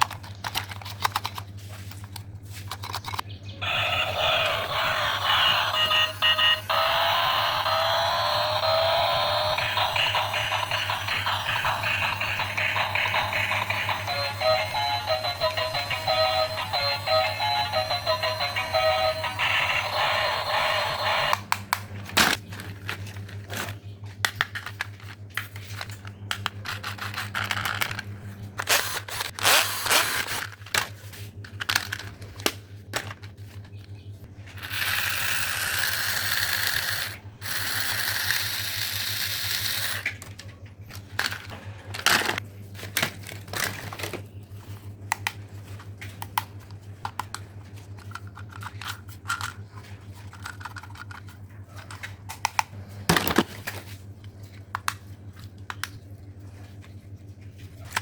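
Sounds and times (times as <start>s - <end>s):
plastic toys clacking together: 0.0s - 3.2s, 21.3s - 44.3s, 46.2s - 53.6s.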